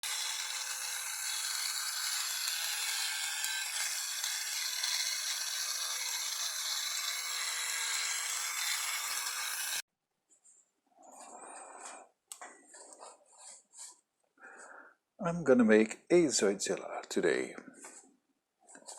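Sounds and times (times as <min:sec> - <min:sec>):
mechanical whirring and rattling: 0:00.0 - 0:09.8.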